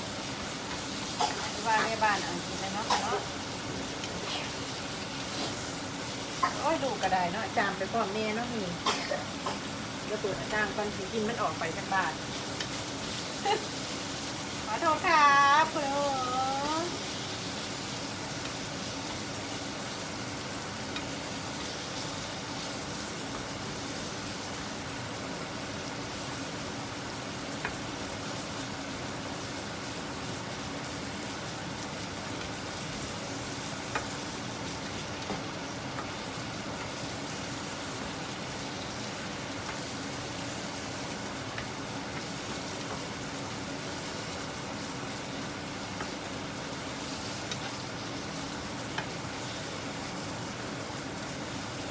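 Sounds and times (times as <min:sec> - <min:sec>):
pork sizzling in a pan: 0:00.0 - 0:51.9.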